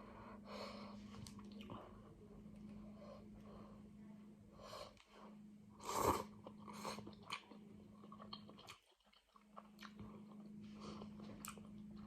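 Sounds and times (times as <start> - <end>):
person chewing soup: 5.8 - 12.0.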